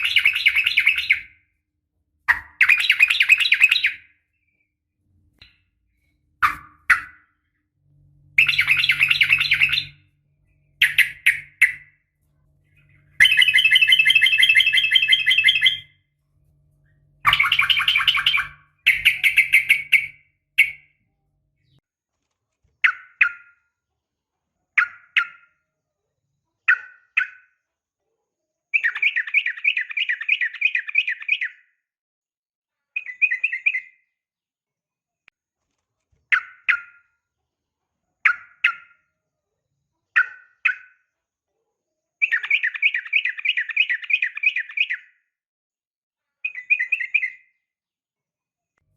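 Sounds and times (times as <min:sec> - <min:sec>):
bird chattering calls: 0:08.4 - 0:10.0, 0:10.8 - 0:11.9, 0:13.0 - 0:15.9, 0:17.2 - 0:20.8.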